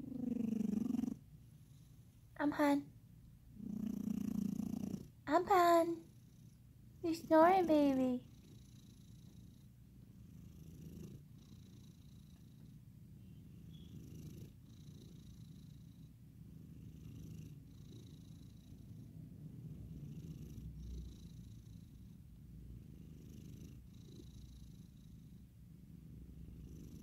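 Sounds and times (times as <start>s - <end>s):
pet snoring faintly: 0.0s - 1.9s, 3.6s - 12.7s, 19.7s - 22.2s, 22.8s - 25.4s, 26.4s - 27.0s
soft breathing hiss: 0.0s - 5.2s.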